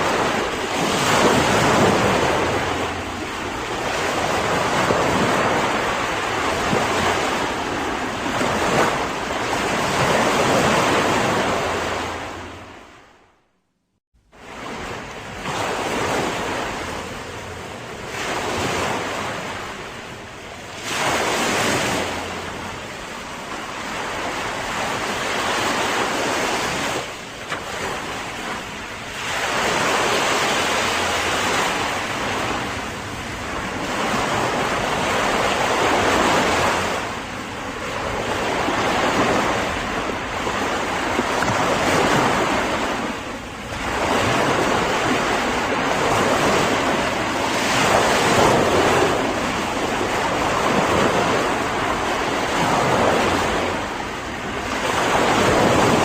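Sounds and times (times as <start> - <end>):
wind on microphone: 0.0 - 13.0, 14.4 - 56.0
ocean waves breaking: 0.0 - 13.4, 14.2 - 56.0.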